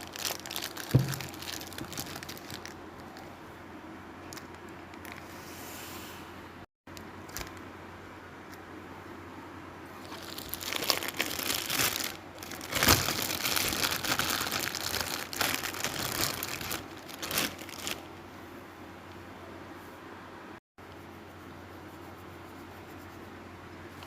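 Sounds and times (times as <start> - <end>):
plastic or paper crinkling: 0.0 - 3.3, 4.3 - 5.3, 10.0 - 18.1.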